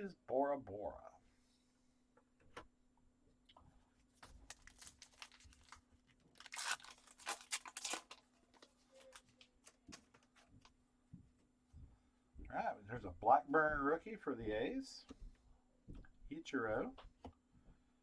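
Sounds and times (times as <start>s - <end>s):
wrapper tearing and crinkling: 4.2s - 10.4s.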